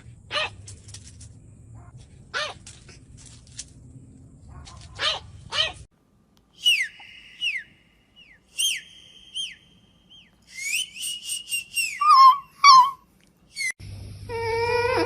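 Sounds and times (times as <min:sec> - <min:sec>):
whistles and chirps: 0:06.5 - 0:13.8.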